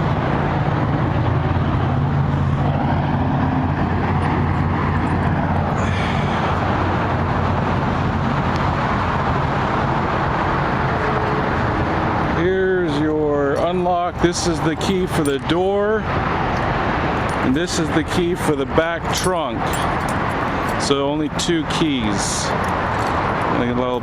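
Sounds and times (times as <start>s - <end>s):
rushing noise: 0.0s - 21.3s
vehicle engine humming: 0.0s - 24.0s.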